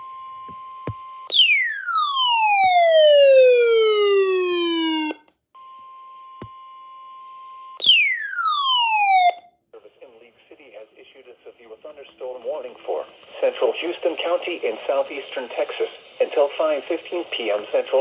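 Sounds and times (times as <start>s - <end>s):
falling electronic siren tone: 1.3s - 5.2s, 7.8s - 9.4s.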